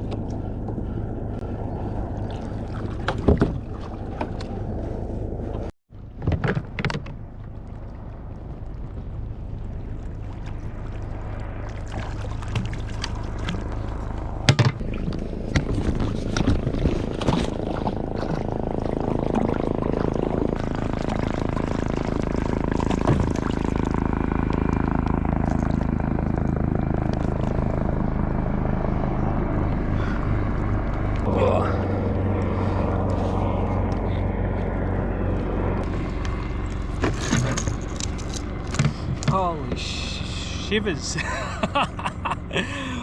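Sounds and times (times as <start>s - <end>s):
water rushing and splashing: 1.5s - 4.8s, 7.4s - 24.2s.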